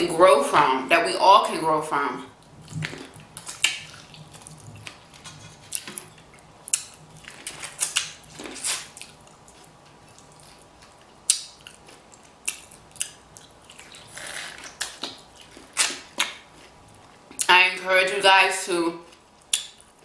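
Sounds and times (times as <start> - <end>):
wet chewing and sucking: 2.4 - 17.5.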